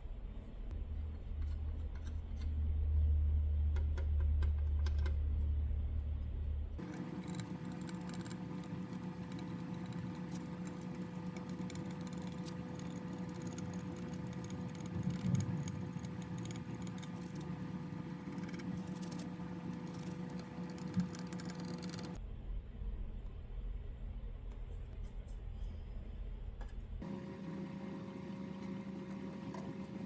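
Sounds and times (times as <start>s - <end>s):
small electric motor humming: 6.8s - 22.2s.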